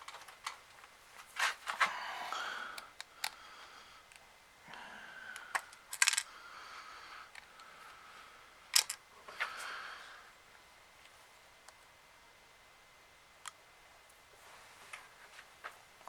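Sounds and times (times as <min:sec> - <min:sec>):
small plastic parts clicking: 0:02.8 - 0:03.4, 0:05.3 - 0:06.3, 0:08.7 - 0:09.0.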